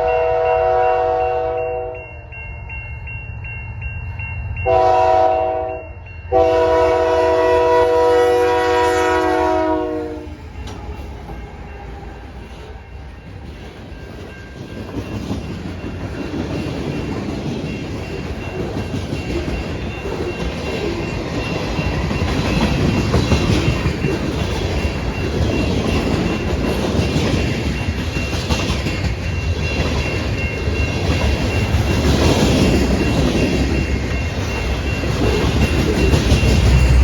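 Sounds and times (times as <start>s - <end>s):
train wheels clickety-clack: 6.4s - 37.0s.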